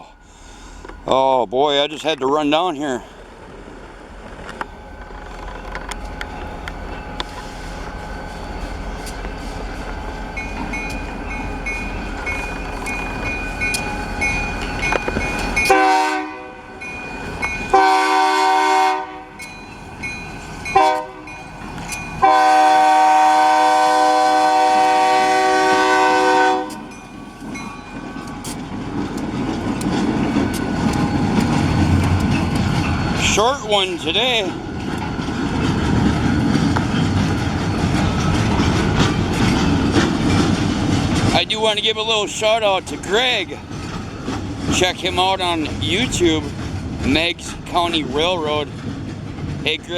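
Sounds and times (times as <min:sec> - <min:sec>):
diesel locomotive engine rumble: 0:00.0 - 0:49.9
locomotive air horn blasts: 0:15.2 - 0:16.8, 0:17.6 - 0:19.5, 0:20.7 - 0:21.4, 0:22.2 - 0:26.9.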